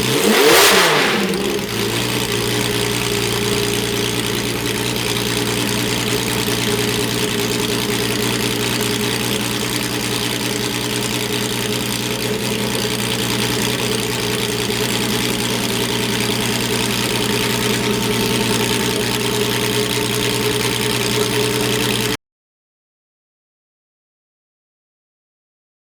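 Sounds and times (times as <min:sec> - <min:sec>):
racing engine idling: 0:00.0 - 0:22.2.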